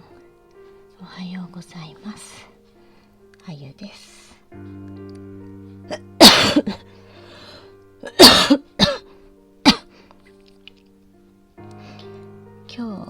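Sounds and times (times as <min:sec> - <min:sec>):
soft background music: 0:00.0 - 0:13.0
woman coughing: 0:05.9 - 0:06.9, 0:08.0 - 0:09.0, 0:09.6 - 0:09.8
woman speaking: 0:12.7 - 0:13.0.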